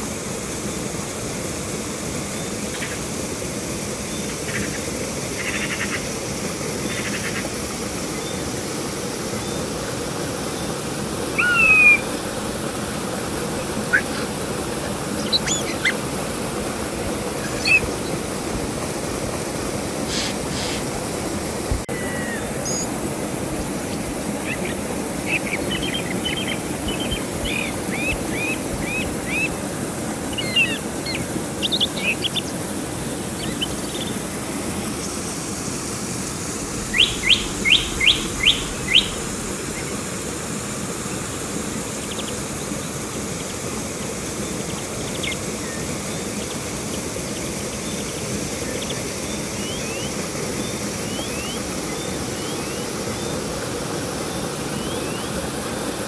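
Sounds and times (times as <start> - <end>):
river rushing: 0.0 - 56.0
songbirds chirping: 23.8 - 32.7, 36.6 - 40.1.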